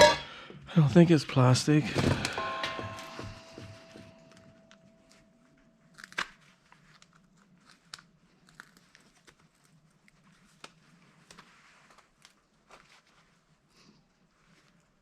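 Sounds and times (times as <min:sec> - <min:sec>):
faint thin ringing tone: 0:02.3 - 0:05.6.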